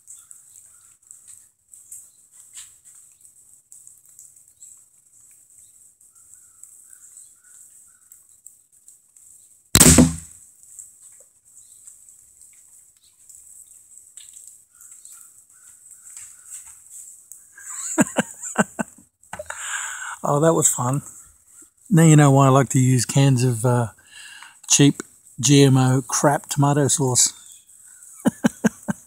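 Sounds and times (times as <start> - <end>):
air pistol shot: 9.8 - 10.3.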